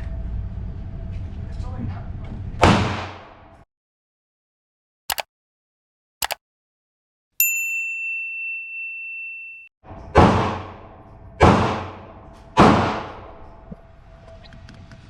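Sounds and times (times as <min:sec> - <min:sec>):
pistol shots: 0:02.6 - 0:03.3.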